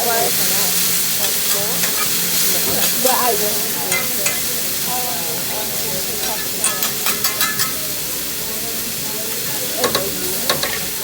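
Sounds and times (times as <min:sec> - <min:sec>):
food sizzling on a griddle: 0:00.0 - 0:11.0.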